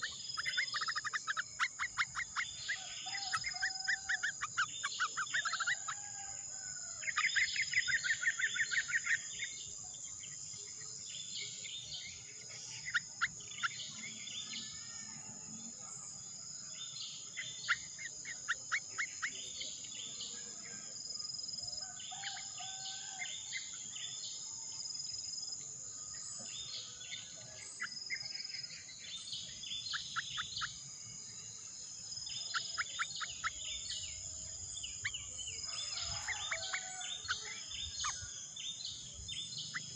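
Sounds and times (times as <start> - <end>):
high bird chirps: 0.0 - 6.1, 32.1 - 34.2, 34.8 - 39.9.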